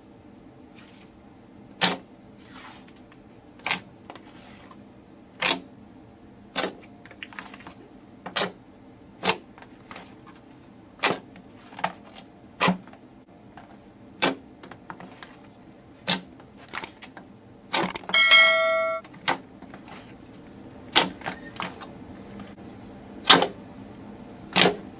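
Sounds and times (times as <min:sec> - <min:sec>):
short ringing chime: 0:18.1 - 0:19.0.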